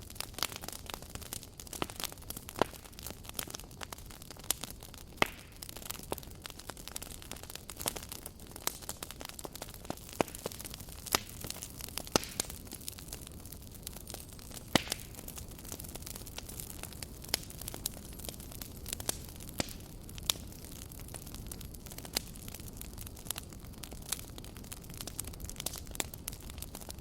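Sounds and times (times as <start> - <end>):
burning wood popping and crackling: 0.0 - 27.0
campfire flames rushing: 0.1 - 27.0.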